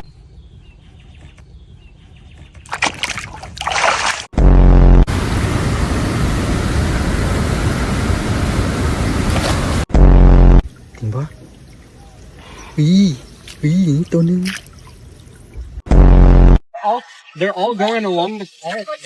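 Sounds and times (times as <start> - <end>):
water splashing: 2.7 - 4.3, 5.1 - 9.9, 13.3 - 15.6
flowing water rushing: 5.1 - 9.9.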